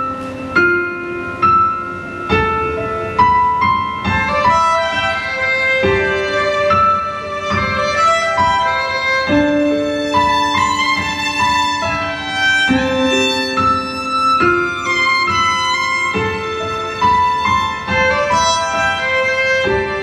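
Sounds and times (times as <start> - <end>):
piano chords: 0.0 - 20.0
violin slow melody: 0.0 - 20.0.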